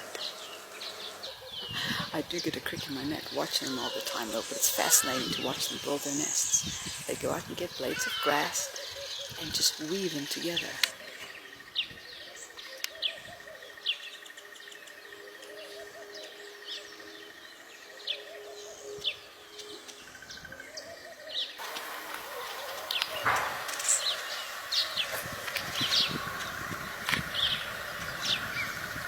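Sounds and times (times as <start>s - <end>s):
background hiss: 0.0s - 13.1s, 21.6s - 29.0s
small birds chirping: 0.0s - 29.0s.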